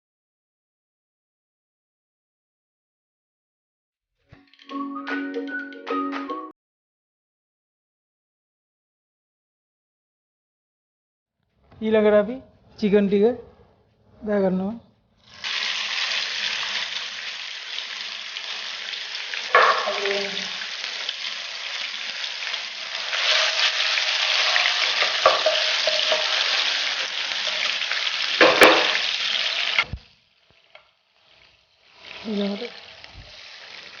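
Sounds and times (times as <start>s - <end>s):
chicken sizzling in hot oil: 15.2s - 34.0s
knocks and scrapes of stirring: 24.9s - 26.4s.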